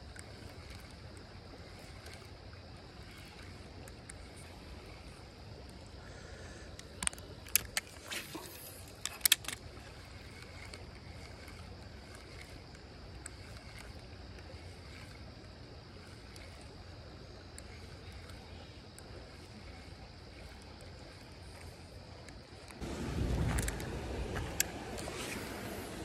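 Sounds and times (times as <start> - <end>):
creek water rushing: 22.8 - 26.0.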